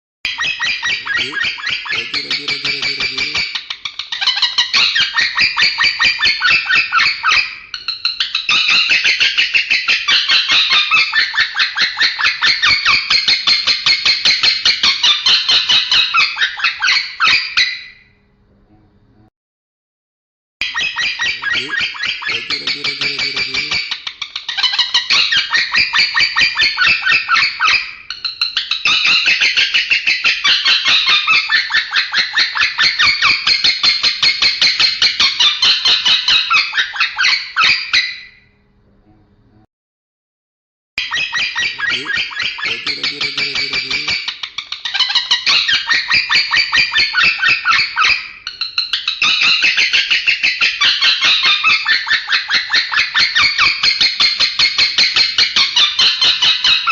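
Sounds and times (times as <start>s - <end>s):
lovebird chattering trill: 0.3s - 14.0s, 20.6s - 33.4s, 41.0s - 56.9s.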